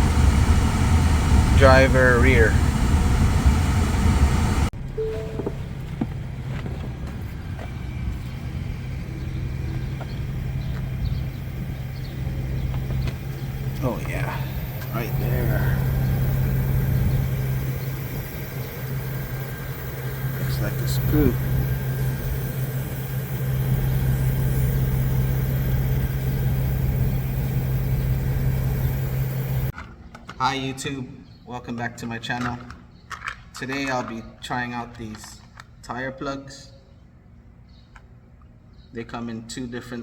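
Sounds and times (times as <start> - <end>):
vehicle engine idling: 0.0 - 29.7.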